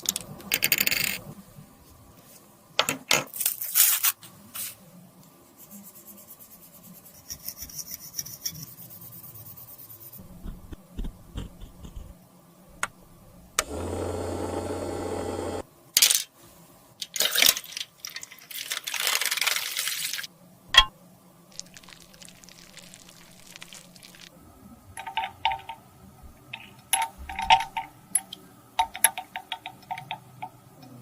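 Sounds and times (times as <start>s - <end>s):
steady hum: 10.2s - 15.7s.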